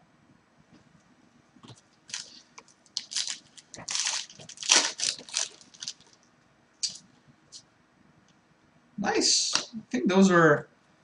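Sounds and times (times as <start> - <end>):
foil wrapper crinkling: 2.1 - 6.2.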